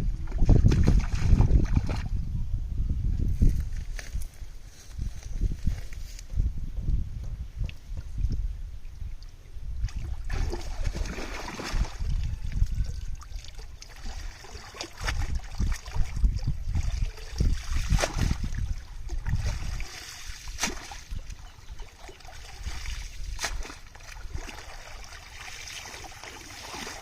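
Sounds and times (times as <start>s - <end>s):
pond water splashing and trickling: 0.1s - 2.2s, 8.8s - 27.0s
sharp splashes: 9.9s - 12.1s, 13.8s - 21.3s, 21.9s - 27.0s.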